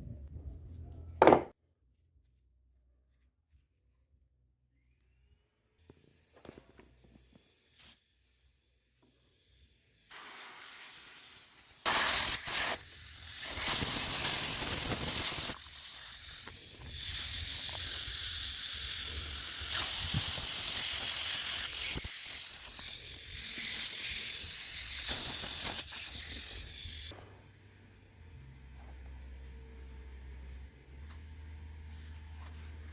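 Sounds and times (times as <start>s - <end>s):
pressurised spray hissing: 10.1s - 22.0s.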